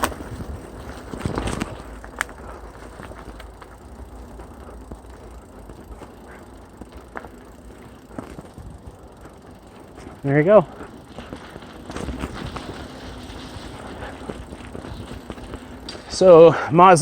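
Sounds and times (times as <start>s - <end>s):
bike clicks and rattles: 0.0s - 17.0s
bike tyre noise on trail: 0.0s - 17.0s.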